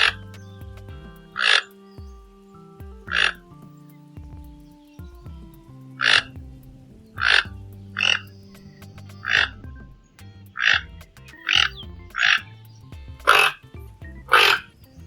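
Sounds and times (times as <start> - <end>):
toucan croaking calls: 0.0 - 15.0.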